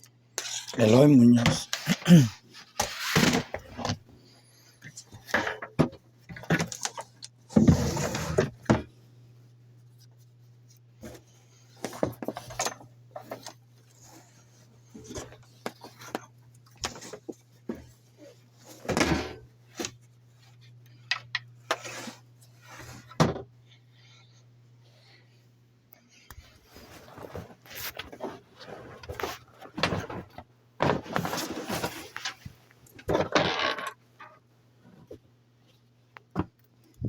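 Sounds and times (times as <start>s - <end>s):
objects being handled: 9.6s - 23.6s, 26.0s - 37.0s.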